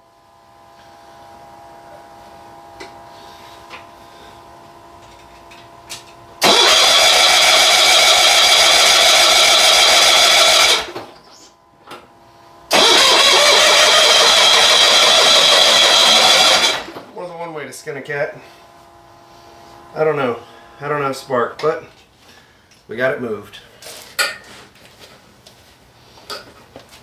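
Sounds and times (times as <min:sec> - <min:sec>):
starter cranking engine: 0:06.4 - 0:11.1, 0:12.7 - 0:17.1.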